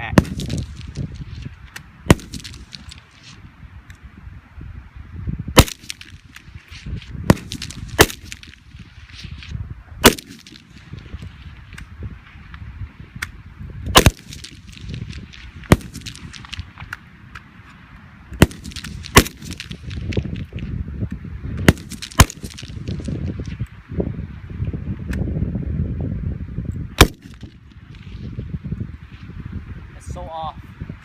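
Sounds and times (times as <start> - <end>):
rifle gunshots: 0.2 - 1.0, 2.1 - 3.0, 5.6 - 6.4, 7.3 - 8.6, 10.0 - 10.9, 14.0 - 16.7, 18.4 - 20.1, 21.6 - 23.1, 27.0 - 27.5
faint gunshot cracks: 2.1 - 2.9, 5.6 - 6.1, 7.3 - 8.6, 10.0 - 10.6, 14.0 - 14.9, 18.4 - 20.1, 21.7 - 22.7, 27.0 - 27.5.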